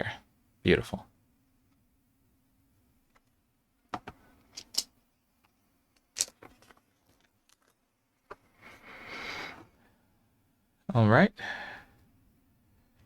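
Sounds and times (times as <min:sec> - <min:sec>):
plastic bricks clicking: 0:04.0 - 0:04.9, 0:06.0 - 0:07.7.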